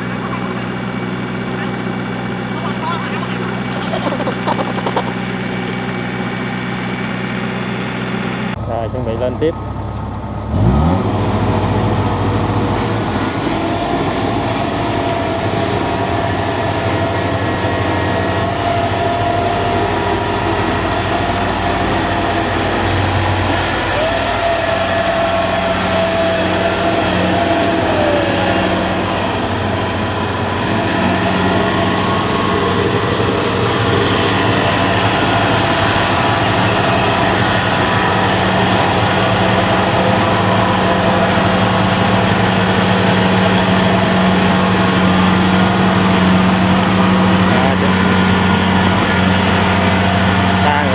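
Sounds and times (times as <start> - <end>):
high whine: 0.0 - 9.2, 11.1 - 50.9
combine harvester diesel engine revving: 0.0 - 50.9.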